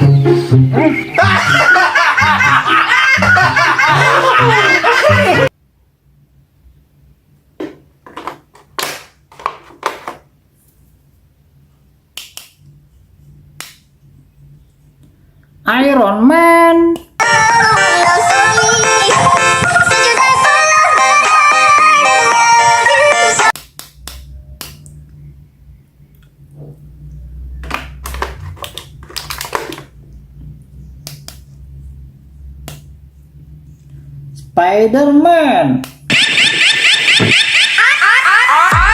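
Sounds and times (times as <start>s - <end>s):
faint low hum: 23.9s - 34.6s
plastic clicks and crinkles: 27.7s - 29.9s.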